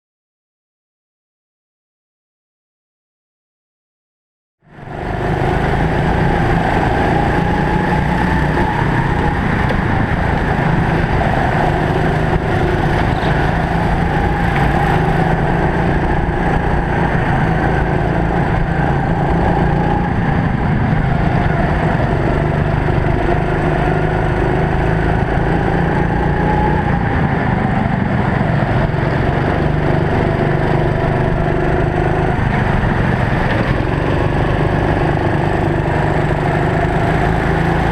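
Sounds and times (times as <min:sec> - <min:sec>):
kart engine running: 0:04.7 - 0:37.9.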